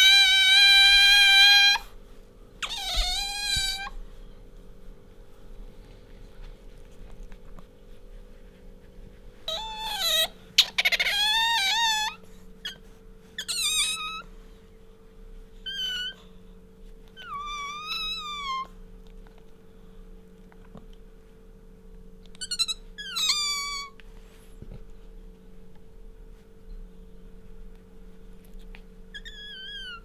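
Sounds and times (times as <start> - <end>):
otter squeaking: 2.6 - 3.9, 9.5 - 12.8, 22.4 - 23.9.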